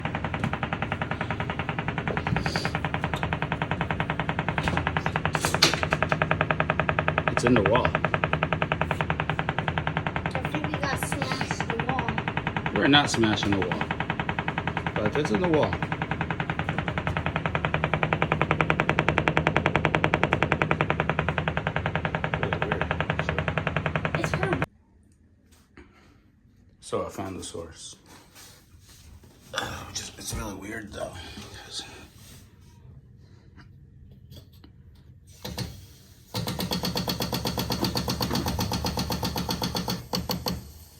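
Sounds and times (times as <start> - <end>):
rapid banging inside a wall: 0.0 - 24.7, 35.4 - 40.7.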